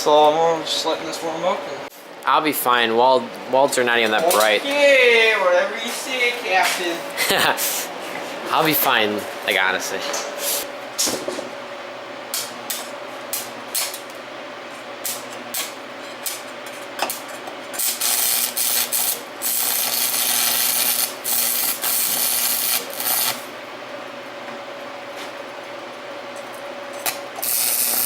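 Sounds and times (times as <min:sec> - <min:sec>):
steady hum: 0:00.0 - 0:28.0
welding arc crackling: 0:12.3 - 0:14.2, 0:15.0 - 0:23.6, 0:26.9 - 0:28.0.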